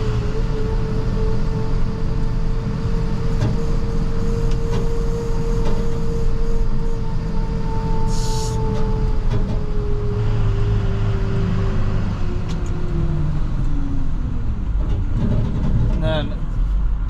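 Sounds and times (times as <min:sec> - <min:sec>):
truck engine rumble and whine: 0:00.0 - 0:17.0
short hiss: 0:08.1 - 0:08.6.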